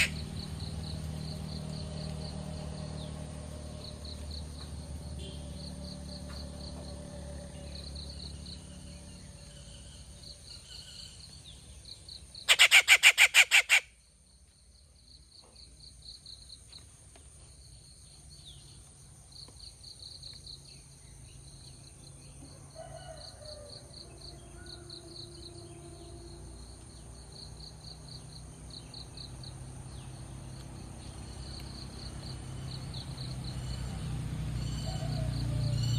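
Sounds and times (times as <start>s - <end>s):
bird harsh rattling call: 0.0s - 0.5s, 12.4s - 13.9s
insects chirping in pulses: 0.0s - 16.7s, 24.0s - 35.9s.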